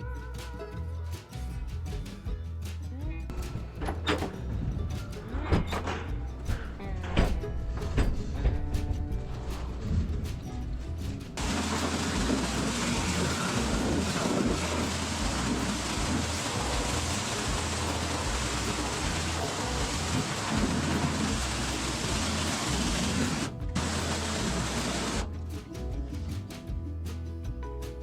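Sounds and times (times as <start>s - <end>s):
pressure washer spraying: 11.4s - 25.3s.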